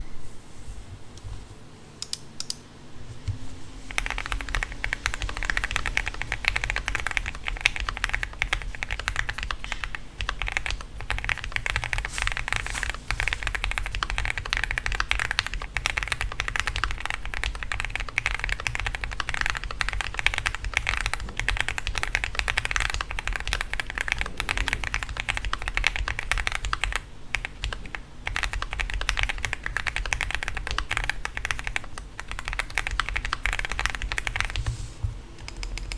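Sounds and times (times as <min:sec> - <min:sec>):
mechanical keyboard typing: 0:03.9 - 0:34.7, 0:35.4 - 0:35.9.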